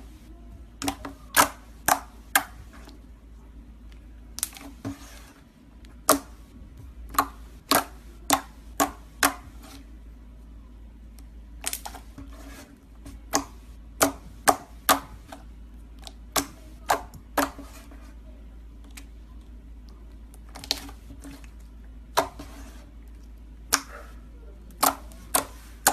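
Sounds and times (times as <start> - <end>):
steady low hum: 0.0 - 25.9.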